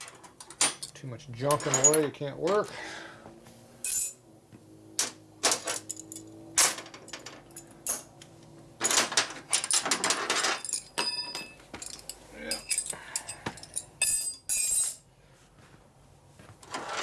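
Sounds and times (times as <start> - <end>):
metal tools clattering on workbench: 0.0 - 2.7, 3.8 - 4.2, 5.0 - 8.2, 8.8 - 15.0.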